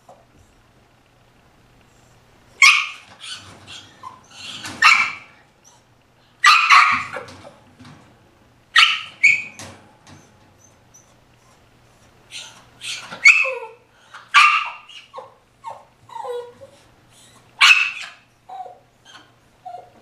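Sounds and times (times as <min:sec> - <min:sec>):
puppy making sharp sounds: 0:02.6 - 0:07.4, 0:08.8 - 0:11.6, 0:12.3 - 0:16.8, 0:17.6 - 0:20.0.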